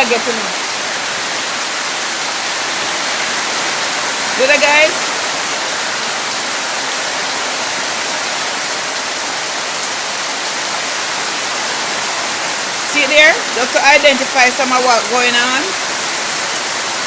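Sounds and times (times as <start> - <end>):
heavy rain on roofs: 0.0 - 17.0.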